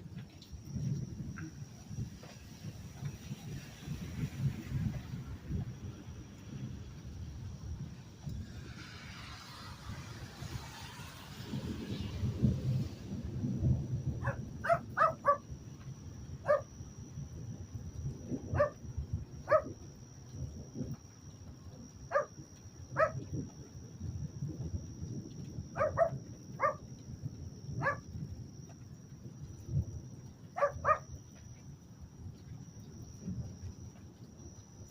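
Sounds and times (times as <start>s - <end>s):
continuous low rumble: 0.0s - 34.9s
dog barking: 14.2s - 15.5s, 16.4s - 16.7s, 18.5s - 18.8s, 19.4s - 19.8s, 22.1s - 22.3s, 23.0s - 23.2s, 25.8s - 26.8s, 27.8s - 28.0s, 30.6s - 31.1s.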